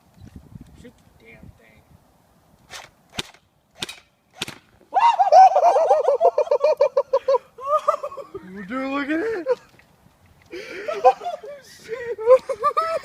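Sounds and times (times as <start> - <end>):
airsoft rifle shots: 2.7 - 4.8.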